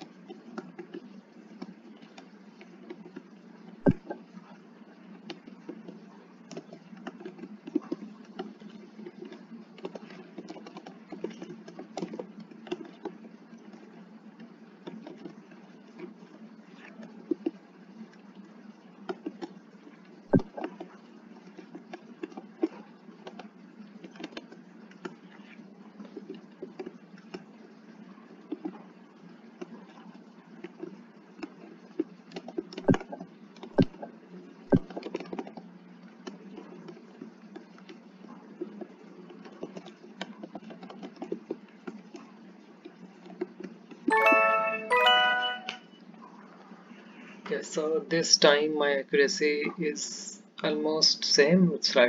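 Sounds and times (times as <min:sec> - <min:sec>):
steady low hum: 0:00.0 - 0:40.2.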